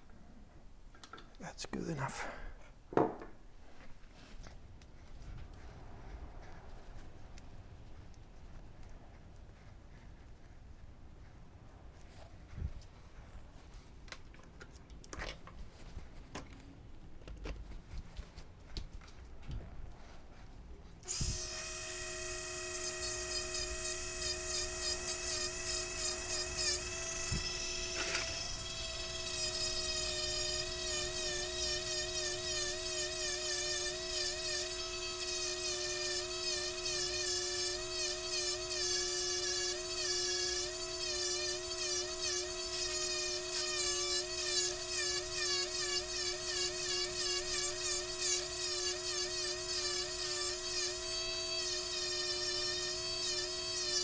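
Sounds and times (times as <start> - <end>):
rotary tool grinding whine: 21.0 - 54.0.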